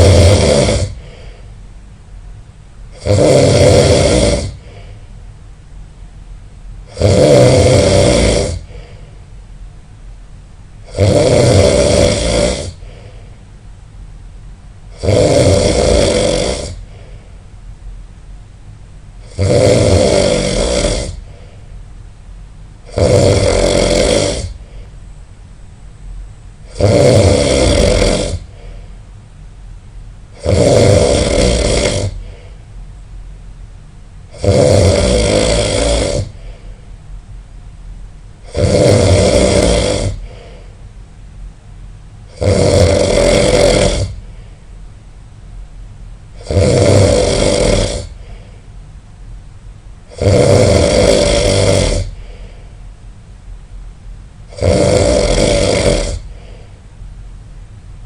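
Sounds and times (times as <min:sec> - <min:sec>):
person snoring loudly: 0:00.0 - 0:01.4, 0:02.9 - 0:04.9, 0:06.9 - 0:09.0, 0:10.8 - 0:13.1, 0:14.9 - 0:17.1, 0:19.2 - 0:21.4, 0:22.8 - 0:24.8, 0:26.6 - 0:28.8, 0:30.3 - 0:32.5, 0:34.3 - 0:36.6, 0:38.4 - 0:40.7, 0:42.3 - 0:44.3, 0:46.4 - 0:48.5, 0:50.1 - 0:52.6, 0:54.5 - 0:56.6.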